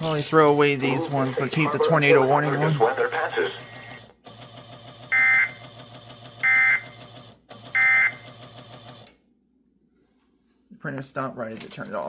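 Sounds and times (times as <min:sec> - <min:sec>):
low rhythmic printer sound: 0:00.3 - 0:09.1.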